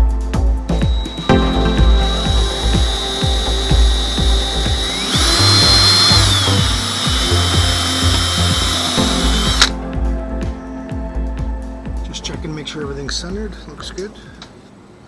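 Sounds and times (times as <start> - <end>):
background music with beat: 0.0 - 14.1
power drill motor whine: 2.3 - 9.7.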